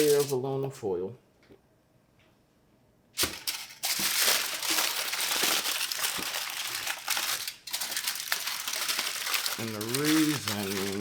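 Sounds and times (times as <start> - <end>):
aluminum foil crinkling: 0.0 - 0.4, 3.2 - 11.0.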